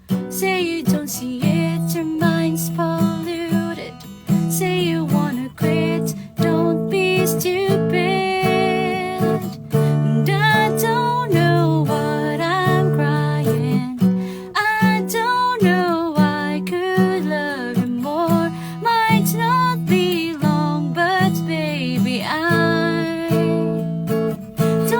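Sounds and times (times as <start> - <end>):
acoustic guitar melody: 0.0 - 24.9.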